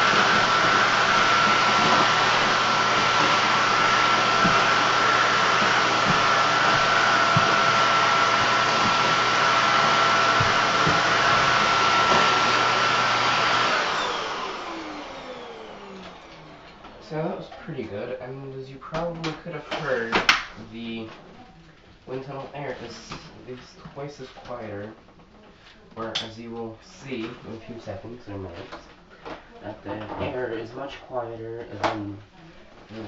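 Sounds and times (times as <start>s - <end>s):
debris knocking in vacuum: 0.0s - 14.2s
vacuum motor spinning down: 0.0s - 17.5s
vacuum cleaner running: 0.0s - 18.5s, 19.2s - 20.4s.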